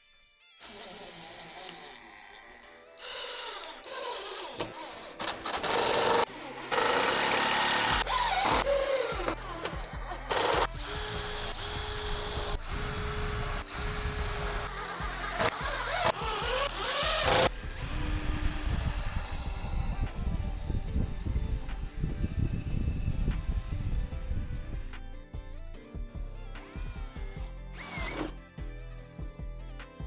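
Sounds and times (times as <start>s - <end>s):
background music: 0.0s - 30.0s
power tool whine: 0.2s - 25.0s, 26.6s - 28.4s.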